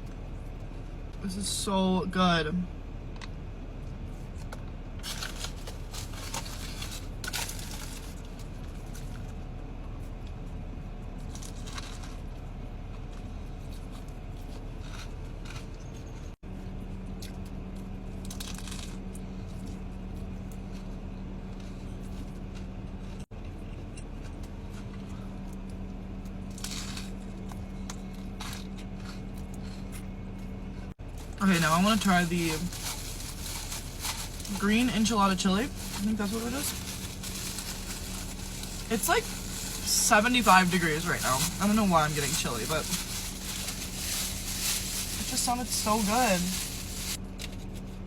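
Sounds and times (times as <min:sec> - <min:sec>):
steady low hum: 0:00.0 - 0:48.0
packaging crinkling: 0:05.0 - 0:09.1, 0:31.1 - 0:47.5.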